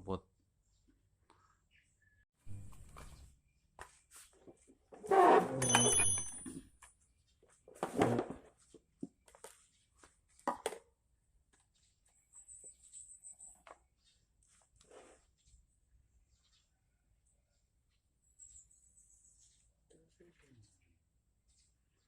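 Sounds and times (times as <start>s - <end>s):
brief metallic ring: 5.6s - 6.6s.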